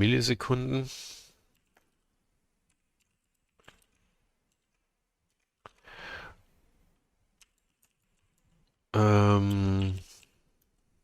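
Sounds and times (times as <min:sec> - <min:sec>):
faint computer clicks: 0:02.6 - 0:06.0
soft breath: 0:05.7 - 0:06.7.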